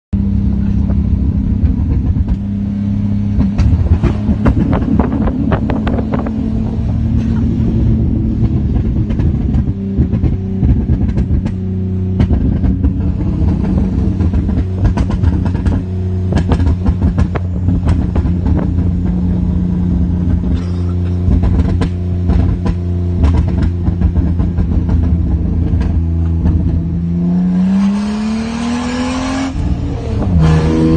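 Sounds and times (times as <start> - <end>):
car engine running: 0.1 - 30.9
exhaust crackling and popping: 0.2 - 30.9.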